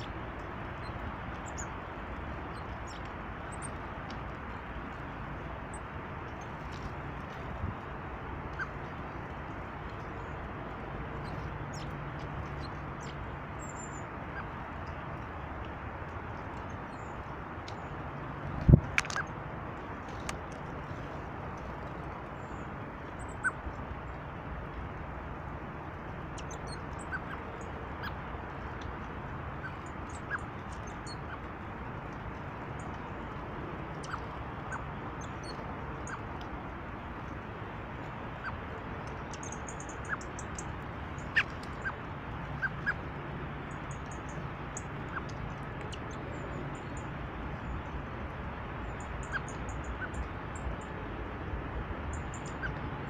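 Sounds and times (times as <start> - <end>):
steady background noise: 0.0 - 53.0
birds chirping: 39.2 - 42.0.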